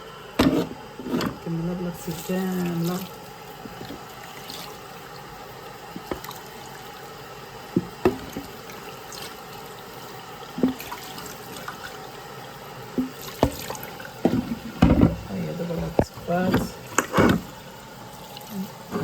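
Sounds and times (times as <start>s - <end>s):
water trickling: 1.8s - 19.0s.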